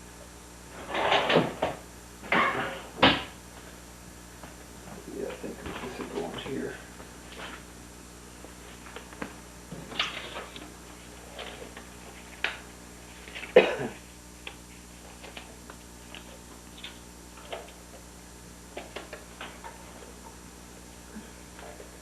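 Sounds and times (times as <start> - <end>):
faint steady hum: 0.0 - 22.0
person coughing: 13.5 - 14.0.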